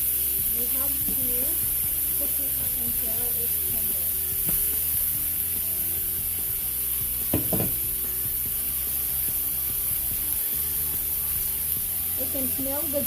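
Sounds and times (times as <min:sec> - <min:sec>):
chicken sizzling in a pan: 0:00.0 - 0:13.0
knock or scrape: 0:07.3 - 0:07.8.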